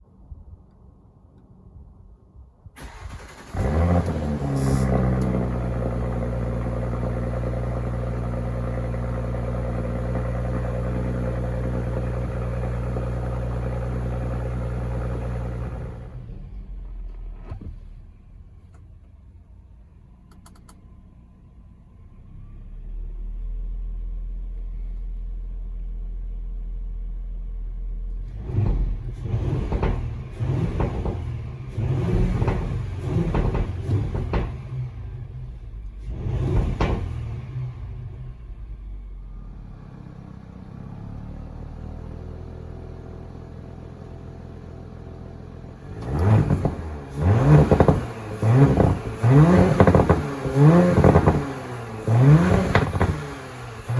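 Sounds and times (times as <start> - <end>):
car engine idling and revving: 2.8 - 53.9.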